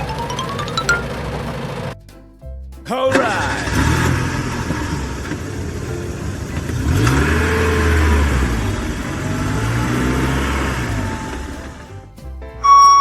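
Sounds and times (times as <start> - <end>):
truck engine revving: 3.2 - 12.0.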